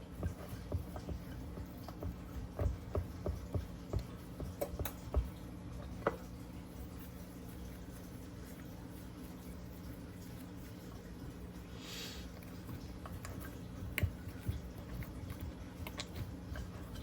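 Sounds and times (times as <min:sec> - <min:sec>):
fingers tapping dough in metal pan: 0:00.0 - 0:05.4.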